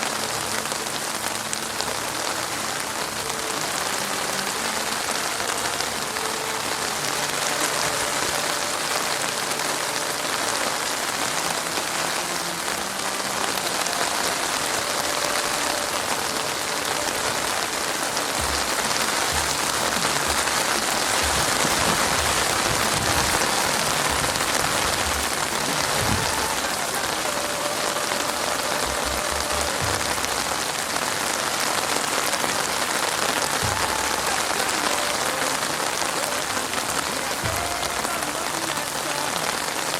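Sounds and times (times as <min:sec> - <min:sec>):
heavy rain hissing: 0:00.0 - 0:39.9
low thumps: 0:18.3 - 0:26.7.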